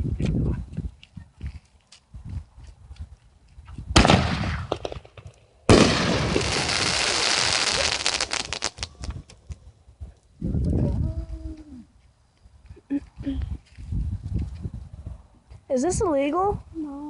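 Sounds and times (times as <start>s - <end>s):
firework blast: 3.9s - 9.1s
firework hissing and crackling: 5.7s - 9.2s.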